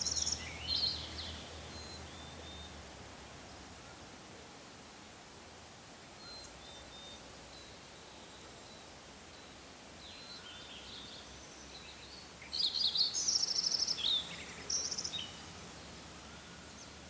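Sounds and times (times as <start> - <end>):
songbird trilling: 0.0 - 2.7, 10.1 - 15.5
soft bird chirps: 0.0 - 2.8, 6.2 - 17.0
faint outdoor hiss: 0.0 - 17.0.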